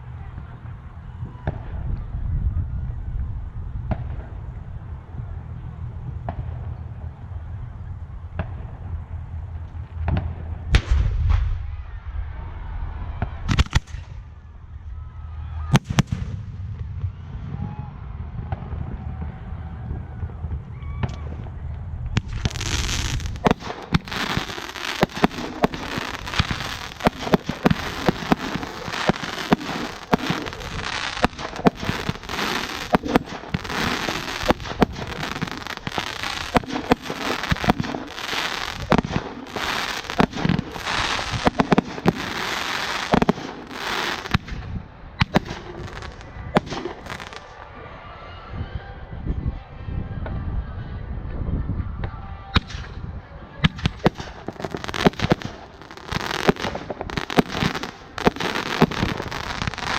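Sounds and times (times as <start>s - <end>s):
fireworks hissing and crackling: 22.2s - 44.6s, 45.2s - 47.7s, 53.7s - 59.9s.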